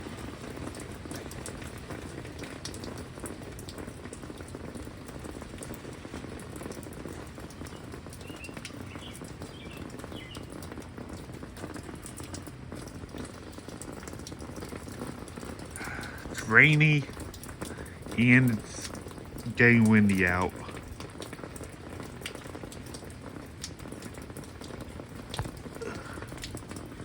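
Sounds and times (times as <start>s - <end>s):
heavy rain falling: 0.0s - 27.0s
raindrops hitting near microphone: 0.0s - 27.0s.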